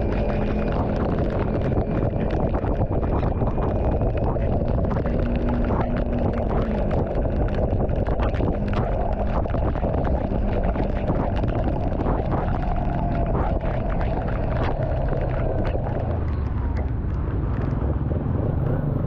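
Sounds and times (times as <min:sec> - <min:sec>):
raindrops crackling: 0:00.0 - 0:18.3
vehicle rumble on road: 0:16.0 - 0:19.0.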